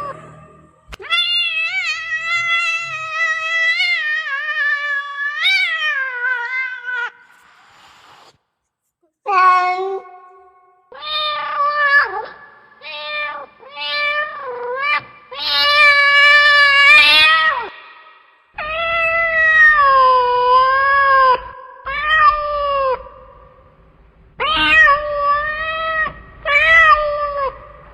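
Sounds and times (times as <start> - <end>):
cat meowing loudly: 0.0 - 7.2, 10.9 - 17.8, 18.6 - 23.2, 24.4 - 27.8.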